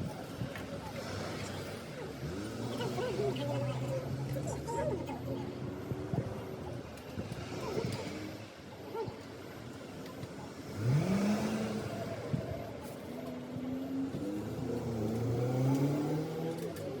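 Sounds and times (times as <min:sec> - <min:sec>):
engine accelerating: 0:10.6 - 0:12.4.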